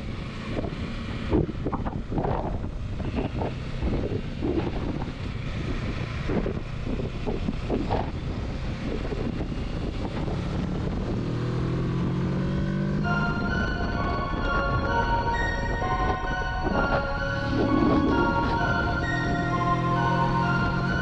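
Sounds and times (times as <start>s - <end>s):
motorcycle engine at speed: 0.0s - 13.4s
wind buffeting on microphone: 0.0s - 21.0s
steady low tone: 13.0s - 21.0s.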